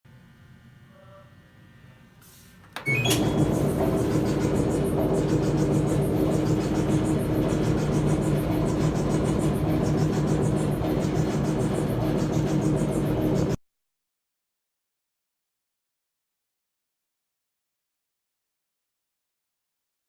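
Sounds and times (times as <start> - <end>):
clothes dryer drum humming: 2.3 - 13.6.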